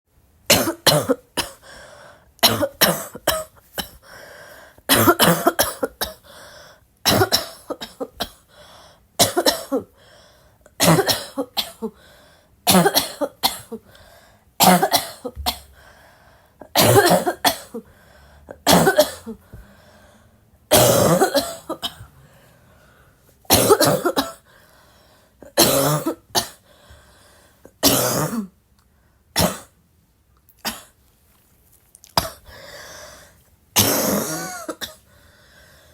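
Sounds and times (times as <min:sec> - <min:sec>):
person coughing: 0:00.5 - 0:01.8, 0:02.4 - 0:04.1, 0:04.9 - 0:06.3, 0:07.0 - 0:08.5, 0:09.2 - 0:10.0, 0:10.8 - 0:12.0, 0:12.7 - 0:13.9, 0:14.6 - 0:15.8, 0:16.6 - 0:17.9, 0:18.5 - 0:19.6, 0:20.7 - 0:22.2, 0:23.5 - 0:24.5, 0:25.4 - 0:26.6, 0:27.7 - 0:28.6, 0:32.1 - 0:32.7, 0:33.8 - 0:35.1.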